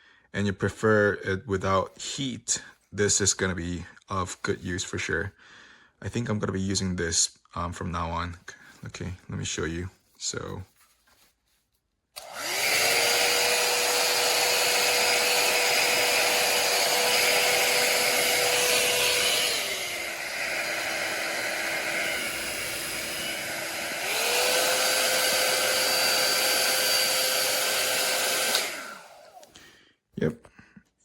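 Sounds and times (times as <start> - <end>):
hair dryer whining and blowing: 12.2 - 29.7.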